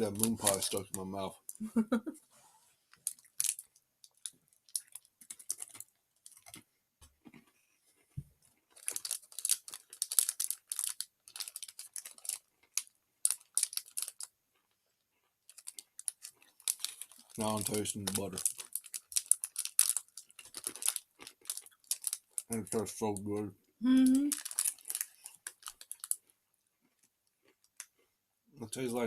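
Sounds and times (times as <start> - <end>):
wrapper rustling: 0.0 - 1.0, 2.9 - 6.6, 8.7 - 14.3, 15.4 - 22.6, 23.9 - 26.2
crunchy snack being eaten: 3.0 - 6.6, 8.6 - 14.3, 15.5 - 22.8, 24.3 - 28.1.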